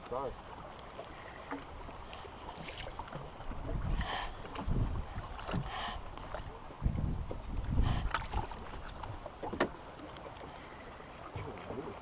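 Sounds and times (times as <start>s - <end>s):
water splashes: 0.0s - 12.0s
wind buffeting microphone: 3.1s - 9.2s.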